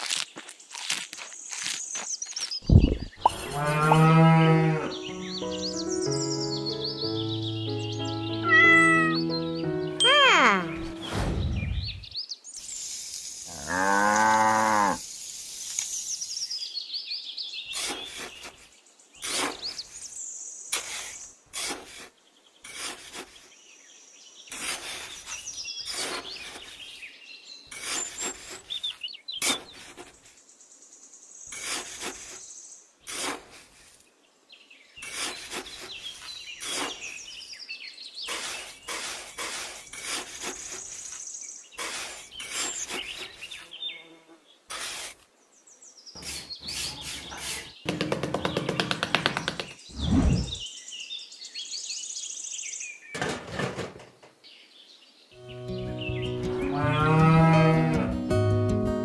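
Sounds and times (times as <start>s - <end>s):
cow mooing: 3.5s - 5.0s, 56.5s - 58.2s.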